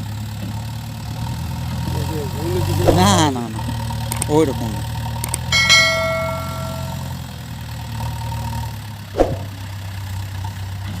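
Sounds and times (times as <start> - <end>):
engine idling: 0.0 - 11.0
ringing strike: 5.4 - 7.3.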